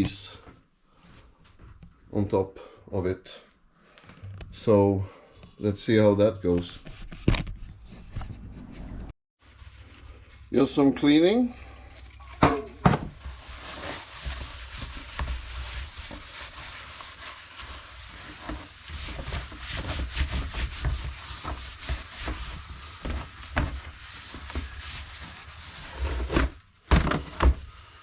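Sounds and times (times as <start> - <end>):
rag scrubbing a surface: 13.2 - 26.6.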